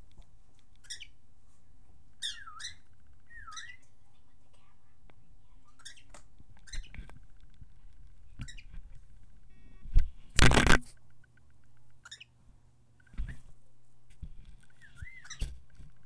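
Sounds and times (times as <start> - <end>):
cockatiel chirping: 0.8 - 1.2, 2.2 - 3.9, 5.6 - 7.0, 8.4 - 8.8, 12.0 - 12.3, 14.7 - 15.5.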